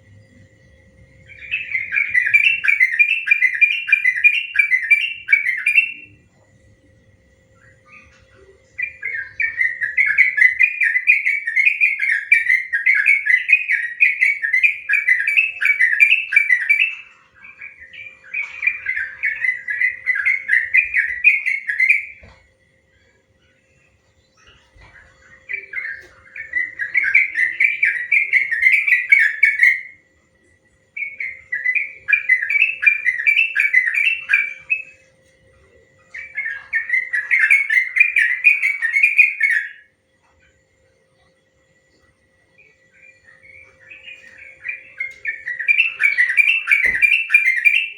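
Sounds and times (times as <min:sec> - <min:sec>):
bulbul singing chattering notes: 0:42.9 - 0:47.9.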